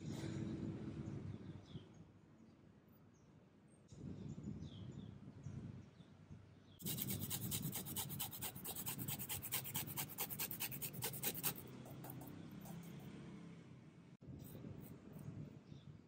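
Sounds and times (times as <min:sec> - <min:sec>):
utensil scraping in a bowl: 0:06.8 - 0:13.0.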